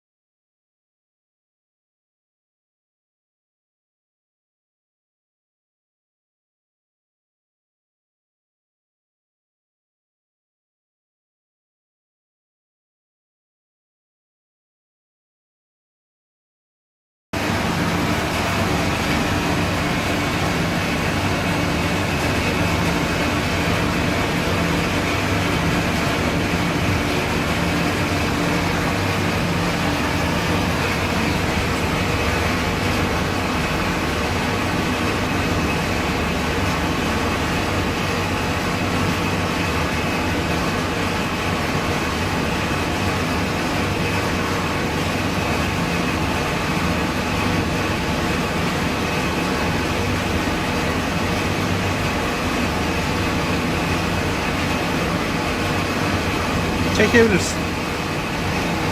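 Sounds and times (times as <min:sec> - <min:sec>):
machinery drone: 0:17.4 - 0:58.9.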